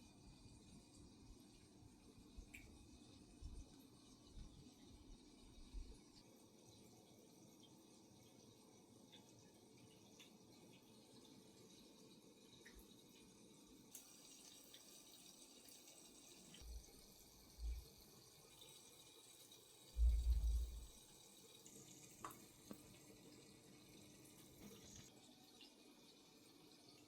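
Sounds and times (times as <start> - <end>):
water trickling and dripping: 0.0 - 27.0
deep thumps: 20.0 - 20.9.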